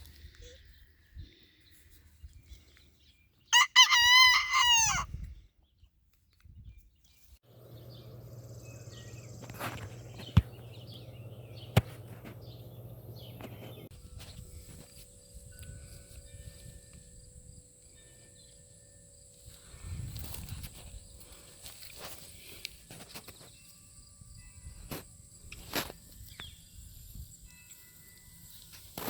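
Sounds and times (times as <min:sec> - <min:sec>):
rooster crowing: 0:03.5 - 0:05.1.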